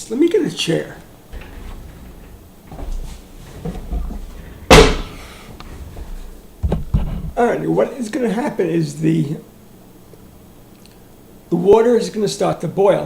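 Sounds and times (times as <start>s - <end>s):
chair handling rumble: 1.0s - 7.5s
chair knocking on floor: 1.3s - 7.4s
small thump: 1.3s - 7.4s.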